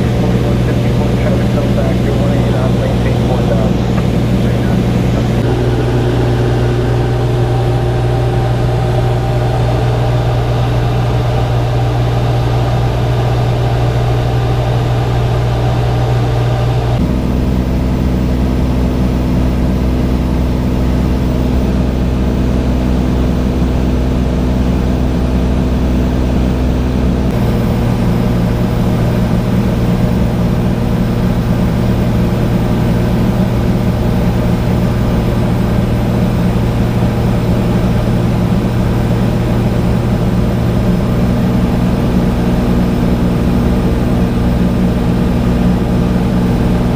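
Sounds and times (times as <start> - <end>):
propeller plane engine droning: 0.0 - 46.9.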